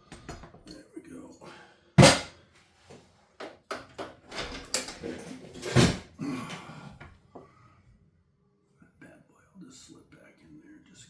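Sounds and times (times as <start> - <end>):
metal tools clattering on workbench: 2.0 - 2.4, 3.7 - 6.1.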